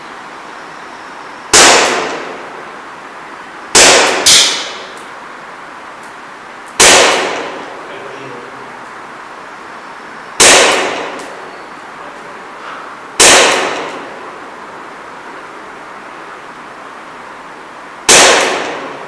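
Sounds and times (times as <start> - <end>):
airsoft pistol shots echoing: 1.5 - 2.6, 3.8 - 4.9, 6.8 - 7.8, 10.4 - 11.4, 13.2 - 14.2, 18.1 - 19.0.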